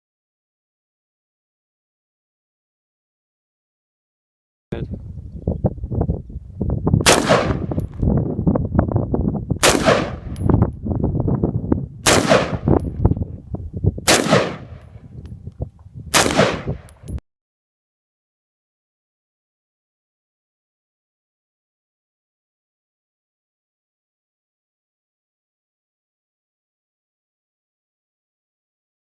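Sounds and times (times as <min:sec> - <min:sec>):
rifle shots with ringing tail: 0:07.0 - 0:08.1, 0:09.6 - 0:10.6, 0:12.0 - 0:13.0, 0:14.1 - 0:15.0, 0:16.1 - 0:17.2.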